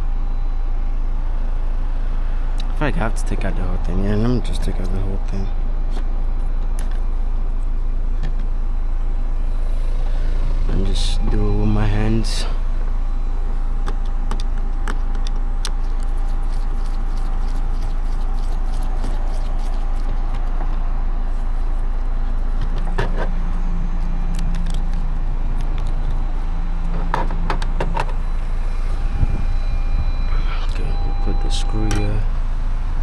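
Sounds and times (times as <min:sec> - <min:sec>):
steady low rumble: 0:00.0 - 0:31.5.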